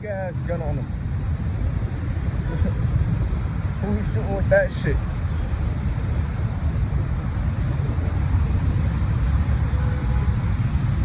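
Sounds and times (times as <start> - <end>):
street noise: 0.0 - 11.0
wind buffeting microphone: 0.0 - 11.0.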